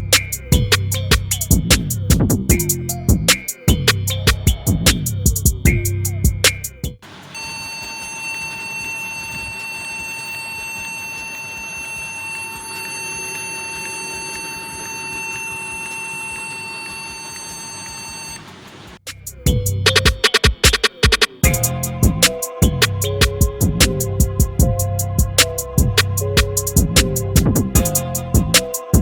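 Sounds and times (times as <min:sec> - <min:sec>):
laptop beeping continuously: 0:07.4 - 0:18.5.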